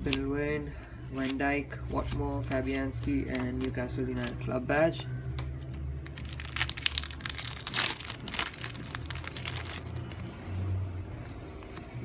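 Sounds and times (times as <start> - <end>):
foil wrapper crinkling: 6.0 - 10.2.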